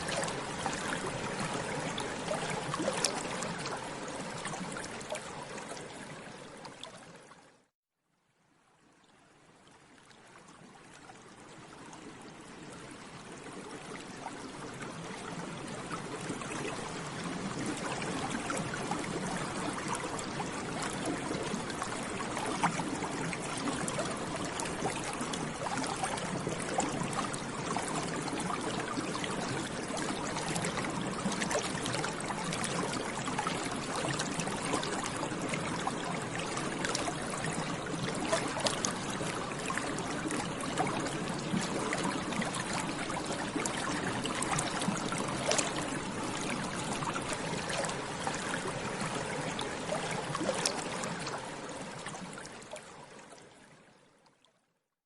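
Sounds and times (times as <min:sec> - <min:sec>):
water bubbling: 0:00.0 - 0:06.1, 0:16.1 - 0:52.6.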